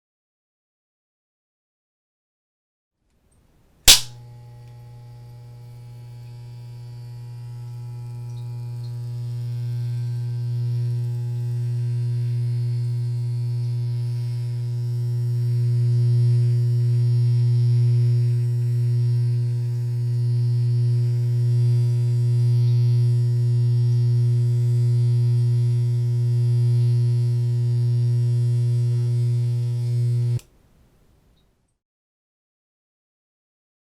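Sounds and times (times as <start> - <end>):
electric razor switch click: 3.9 - 4.8
electric razor buzzing: 3.9 - 30.4.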